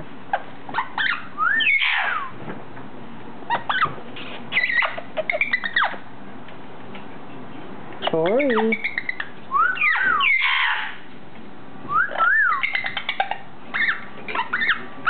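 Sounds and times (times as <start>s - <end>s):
parrot chirps and squawks: 0.3s - 2.3s, 3.5s - 3.9s, 4.5s - 6.0s, 8.2s - 11.1s, 12.0s - 14.9s
parrot whistling: 0.7s - 2.3s, 4.6s - 6.0s, 8.3s - 11.0s, 11.9s - 14.9s.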